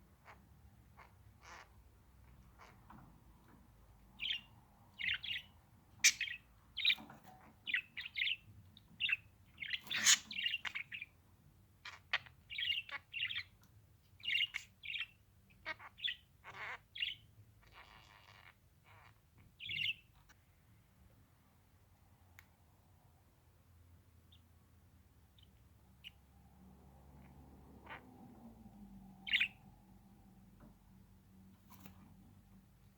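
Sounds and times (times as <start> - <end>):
budgerigar chirping: 0.2 - 2.8, 4.2 - 7.0, 7.6 - 11.1, 11.8 - 13.6, 14.2 - 20.1, 29.2 - 29.6.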